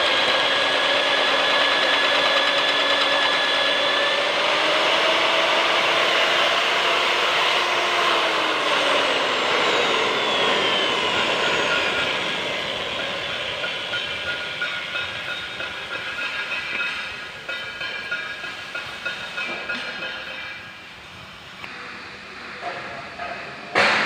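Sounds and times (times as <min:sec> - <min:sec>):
electric drill motor whining: 0:00.0 - 0:14.6.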